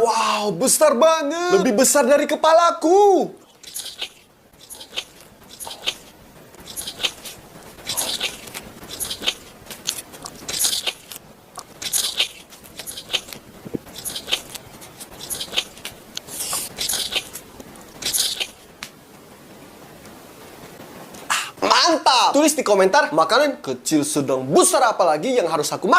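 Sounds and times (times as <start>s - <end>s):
chewing rice ball: 3.4s - 18.7s.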